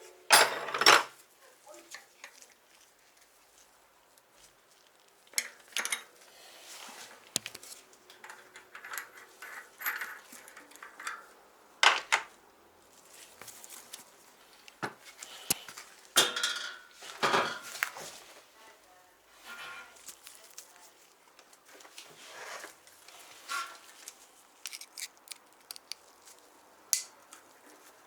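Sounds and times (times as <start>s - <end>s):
metal parts and tools clinking: 8.1s - 11.3s, 24.6s - 26.0s.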